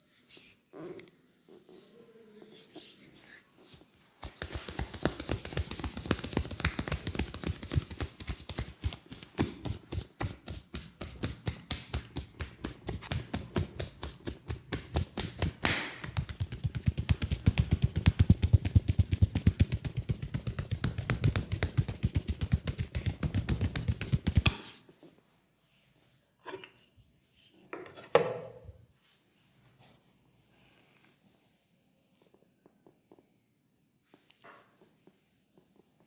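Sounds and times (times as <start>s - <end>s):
percussive massage tapping on leg: 4.2s - 24.6s.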